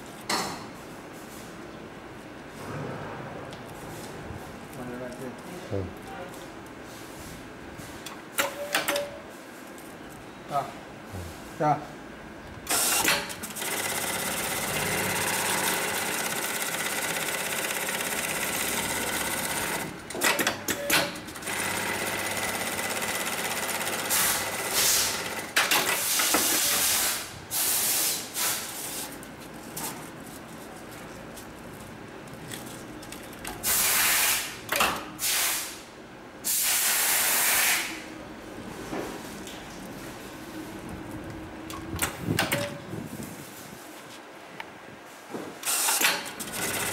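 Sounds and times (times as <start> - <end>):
sewing machine stitching: 12.8 - 26.3, 45.7 - 46.9
loud hissing bursts: 26.0 - 29.0, 33.6 - 34.6, 35.2 - 38.1.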